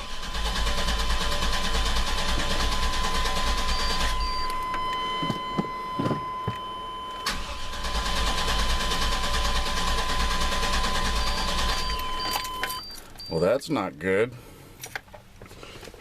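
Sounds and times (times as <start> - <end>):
truck engine cranking: 0.0 - 4.6, 7.2 - 13.3.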